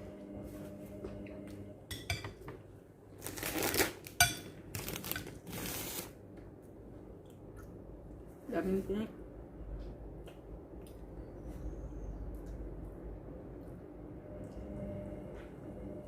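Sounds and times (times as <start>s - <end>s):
mouth chewing sounds: 10.1s - 12.9s.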